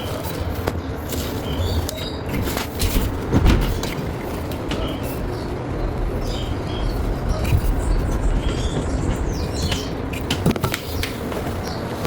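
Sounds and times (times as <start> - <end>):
washer drum rumbling: 2.1 - 12.0
irregular knocks: 2.4 - 11.5.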